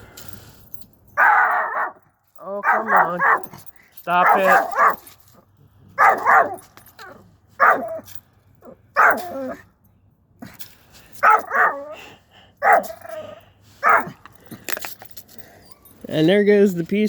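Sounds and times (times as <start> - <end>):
dog barking: 1.2 - 2.0, 2.6 - 3.5, 4.2 - 5.1, 6.0 - 6.6, 7.6 - 8.0, 9.0 - 9.6, 11.2 - 11.9, 12.6 - 13.0, 13.8 - 14.2.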